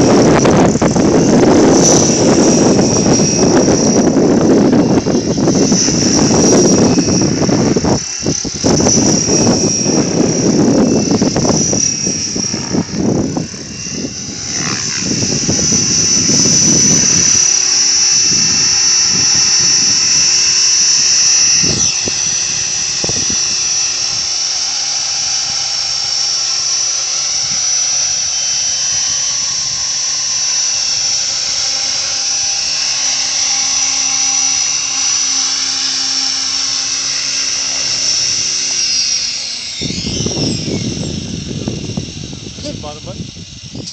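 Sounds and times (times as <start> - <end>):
wind buffeting microphone: 0.0 - 26.5, 27.2 - 43.9
model helicopter rotor whine: 0.0 - 43.9.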